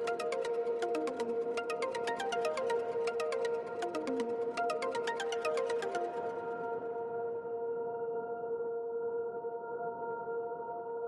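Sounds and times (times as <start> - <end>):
held ringing chord: 0.0 - 7.0.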